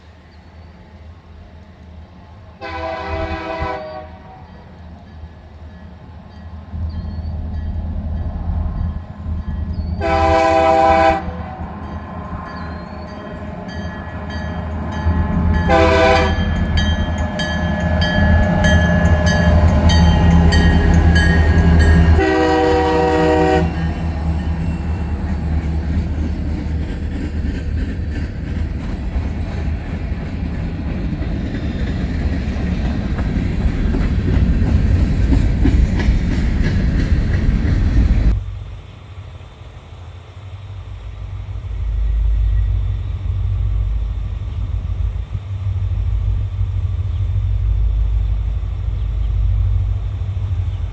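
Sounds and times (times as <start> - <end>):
locomotive engine rumbling: 0.5 - 50.9
locomotive air horn blasts: 2.6 - 4.4, 10.0 - 11.6, 15.7 - 16.5, 22.1 - 24.0
freight train wheels clattering: 11.8 - 38.9.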